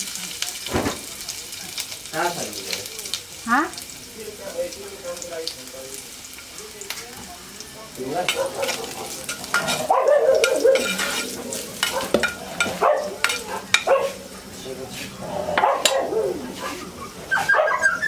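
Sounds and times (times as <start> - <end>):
greens sizzling in a pan: 0.0 - 17.5
utensil scraping a pan: 8.2 - 14.2.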